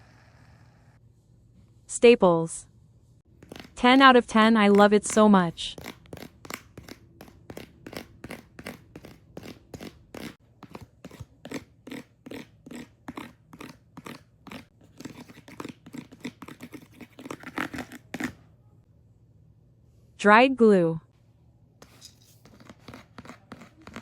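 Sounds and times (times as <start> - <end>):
fingers scratching textured surface: 3.4 - 18.4, 21.8 - 24.0.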